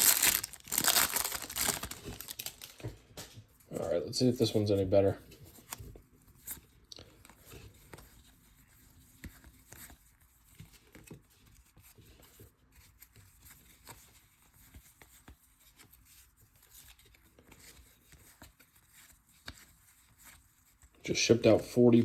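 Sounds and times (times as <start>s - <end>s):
packaging tearing and rustling: 0.0s - 2.9s.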